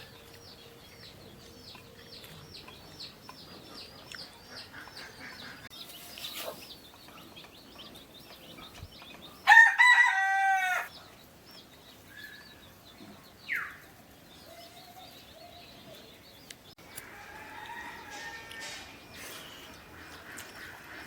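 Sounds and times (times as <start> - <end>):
small birds chirping: 0.0 - 18.2, 18.9 - 21.0
rooster crowing: 9.4 - 10.9, 17.0 - 18.8.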